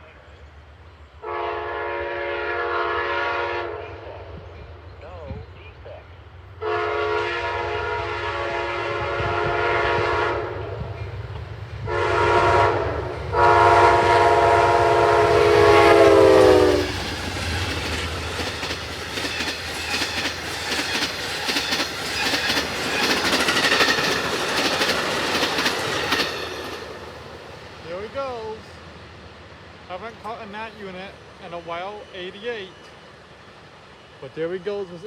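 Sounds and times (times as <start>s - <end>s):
locomotive air horn: 1.2s - 4.0s, 6.6s - 10.8s, 11.9s - 17.0s
train wheels clacking over rail joints: 16.8s - 27.3s.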